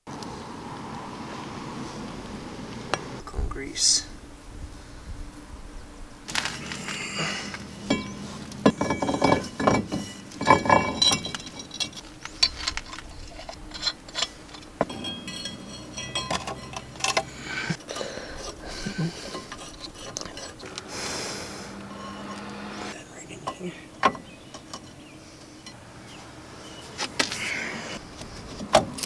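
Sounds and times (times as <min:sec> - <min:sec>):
metal tools clinking and knocking: 0:06.3 - 0:20.9, 0:23.4 - 0:25.0.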